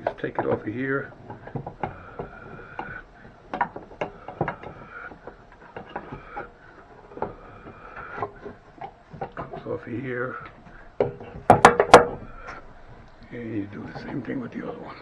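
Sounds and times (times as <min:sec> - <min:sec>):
plastic and wood knocking: 0:00.0 - 0:09.7, 0:10.5 - 0:12.6.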